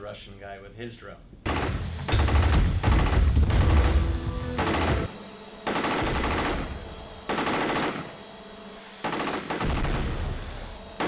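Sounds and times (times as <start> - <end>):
machine gun bursts: 1.5 - 4.0, 4.6 - 8.1, 9.0 - 10.4.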